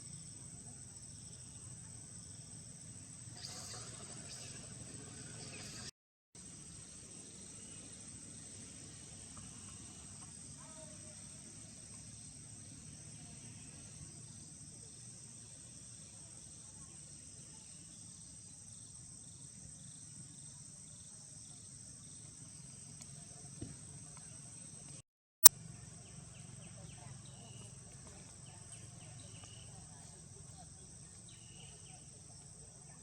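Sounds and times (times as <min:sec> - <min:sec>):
insects chirping: 0:06.4 - 0:24.9, 0:25.8 - 0:33.0.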